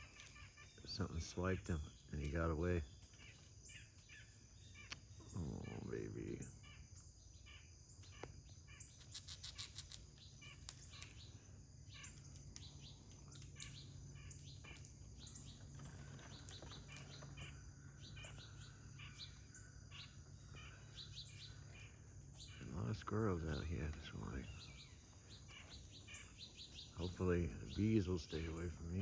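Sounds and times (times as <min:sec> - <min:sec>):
small birds chirping: 0:00.0 - 0:29.0
low steady hum: 0:10.0 - 0:29.0.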